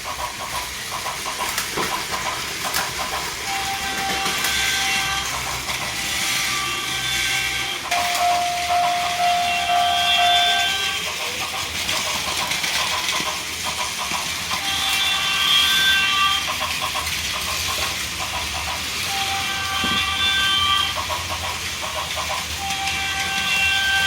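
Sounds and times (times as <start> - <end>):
toy trains clattering on track: 0.0 - 24.0
electronic horn toots: 3.5 - 5.4, 6.0 - 10.8, 19.1 - 20.8.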